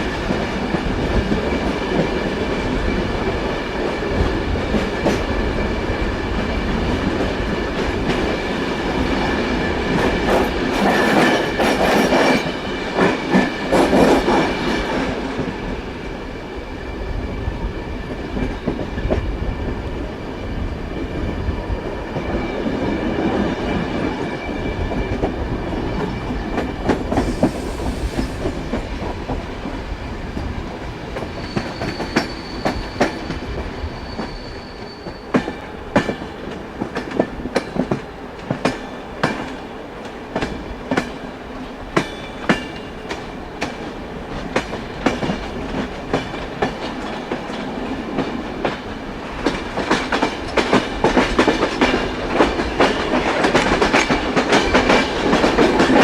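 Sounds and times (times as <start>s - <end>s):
train wheels rumbling on rails: 0.0s - 56.0s
faint high wheel squeal: 31.3s - 35.7s
clacks over rail joints: 42.0s - 56.0s.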